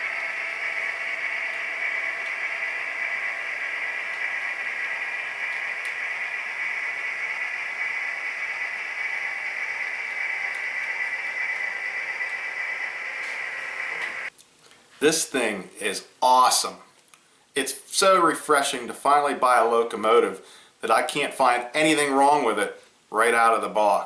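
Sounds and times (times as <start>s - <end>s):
model train diesel engine sound: 0.0s - 14.3s.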